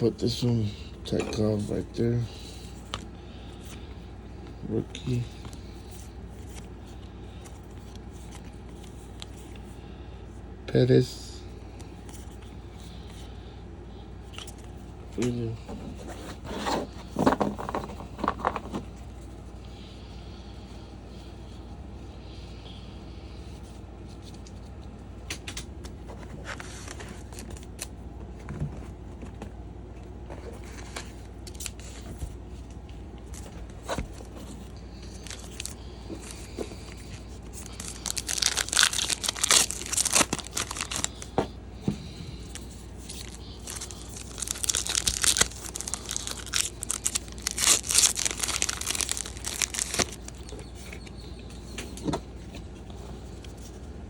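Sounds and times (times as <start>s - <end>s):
foil wrappers tearing and crinkling: 35.0s - 41.4s, 42.4s - 50.6s.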